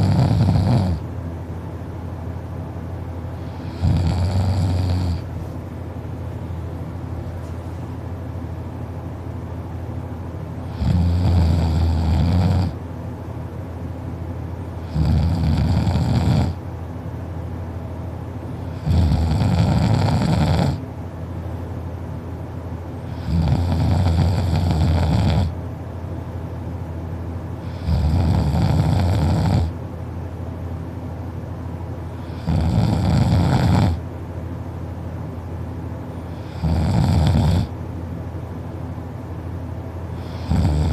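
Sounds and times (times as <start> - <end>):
person snoring loudly: 0.0 - 1.0, 3.5 - 5.3, 10.7 - 12.8, 14.8 - 16.6, 18.8 - 20.8, 23.1 - 25.5, 27.7 - 29.7, 32.3 - 34.0, 36.4 - 37.7, 40.2 - 40.9
steady background hiss: 0.0 - 40.9.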